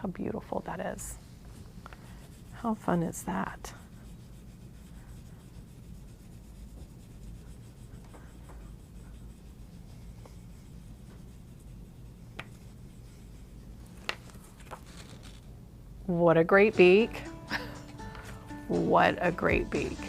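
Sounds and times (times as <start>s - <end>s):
colouring on paper scratching: 0.2s - 15.5s.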